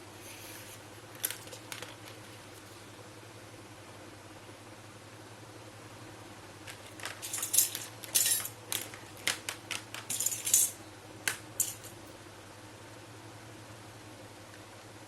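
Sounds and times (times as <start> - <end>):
small toy pieces clinking: 6.7 - 10.8, 11.6 - 12.0.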